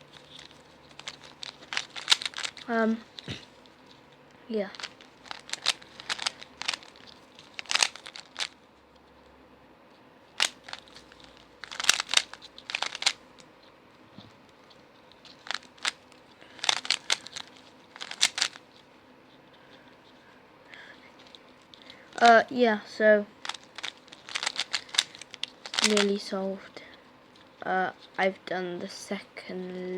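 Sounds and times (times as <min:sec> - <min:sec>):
speed cube clicking: 0:00.2 - 0:03.5, 0:04.7 - 0:08.6, 0:10.4 - 0:13.2, 0:15.3 - 0:18.6, 0:22.1 - 0:22.4, 0:23.4 - 0:26.2.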